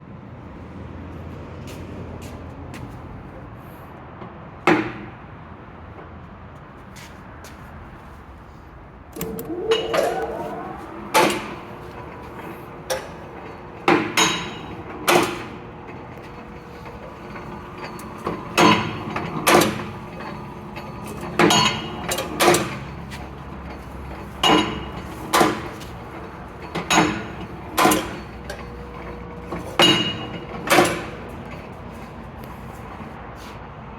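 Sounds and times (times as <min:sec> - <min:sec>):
metal punch clanks: 0:09.2 - 0:23.1, 0:23.7 - 0:31.7
machine motor humming: 0:09.2 - 0:33.1.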